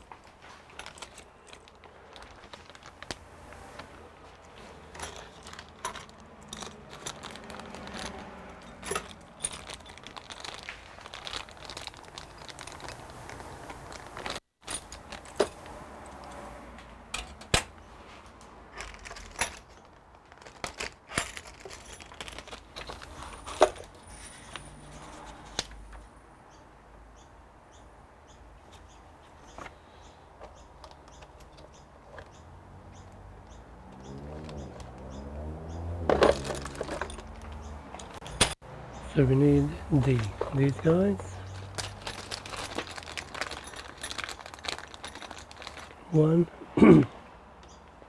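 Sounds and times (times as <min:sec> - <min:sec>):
plastic packaging crinkling: 0:00.2 - 0:14.4, 0:18.8 - 0:24.0, 0:34.1 - 0:38.3, 0:39.3 - 0:46.0
small parts clicking and clinking: 0:00.2 - 0:26.1, 0:33.1 - 0:38.6, 0:39.6 - 0:46.0.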